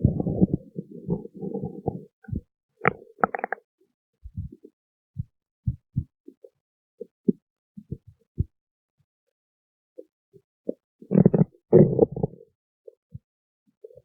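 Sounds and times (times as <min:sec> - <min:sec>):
stomach growling: 0:00.0 - 0:03.6, 0:10.7 - 0:12.5.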